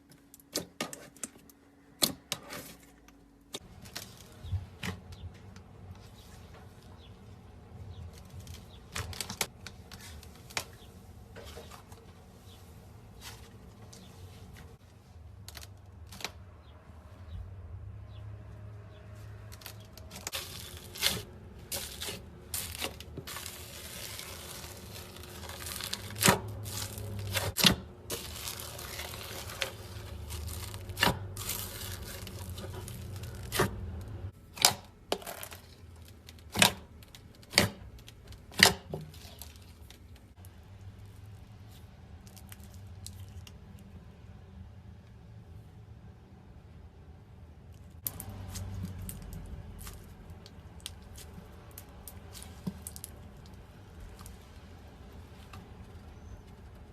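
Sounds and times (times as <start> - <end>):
plastic crinkling and tearing: 19.5 - 34.2, 35.1 - 40.4, 48.0 - 56.8.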